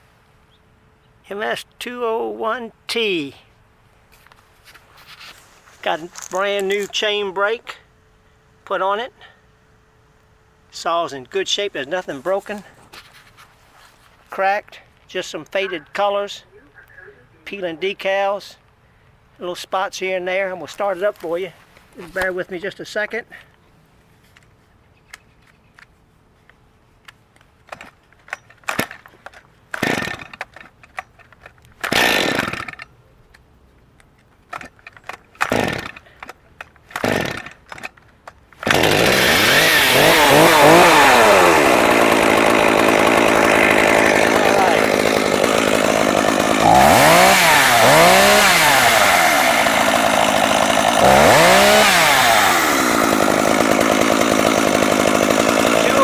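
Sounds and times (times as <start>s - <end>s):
chainsaw starter cord pulls: 4.1s - 7.6s, 11.5s - 13.4s, 27.1s - 56.0s
chainsaw engine revving: 5.8s - 7.3s, 29.7s - 30.7s, 31.8s - 32.8s, 34.6s - 38.0s, 38.6s - 56.0s.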